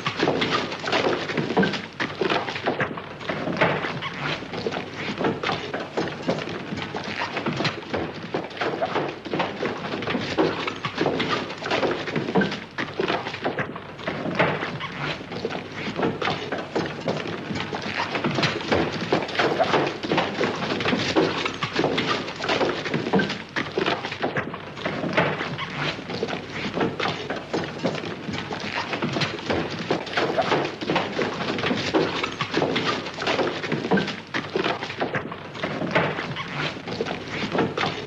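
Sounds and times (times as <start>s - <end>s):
horse hooves on floor: 0.0s - 38.0s.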